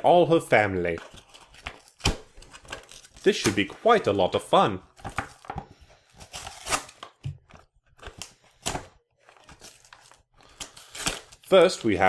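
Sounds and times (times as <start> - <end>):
packaging being torn open: 1.0 - 3.6, 6.2 - 7.2, 8.0 - 11.9.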